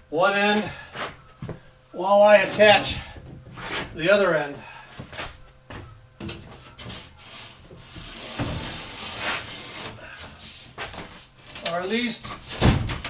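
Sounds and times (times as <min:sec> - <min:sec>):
plywood scraping on wood: 0:06.9 - 0:11.4.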